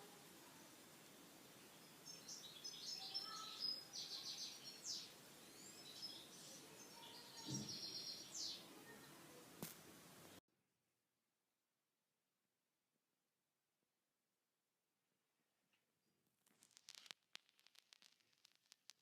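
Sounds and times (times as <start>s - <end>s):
faint hiss: 0.0s - 10.4s
small birds chirping: 0.0s - 10.4s.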